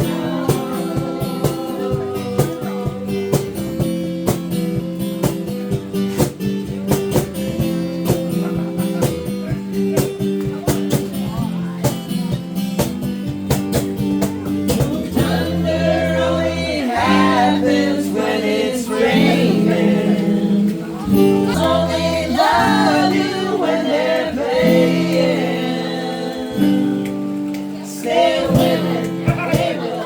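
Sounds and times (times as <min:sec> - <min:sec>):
person singing: 0:00.0 - 0:04.0, 0:14.7 - 0:30.0
guitar chords: 0:00.0 - 0:30.0.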